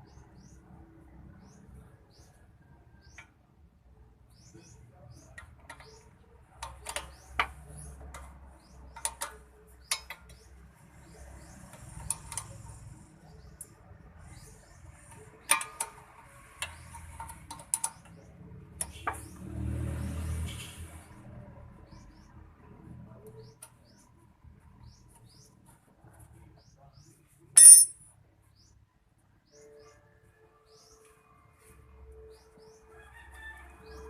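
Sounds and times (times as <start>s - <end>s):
metal tools clinking: 27.6s - 28.0s.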